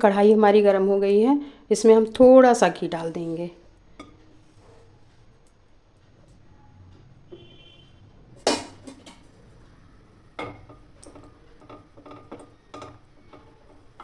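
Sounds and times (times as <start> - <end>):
metal utensils clinking on a pan: 8.4 - 9.3, 10.4 - 14.0.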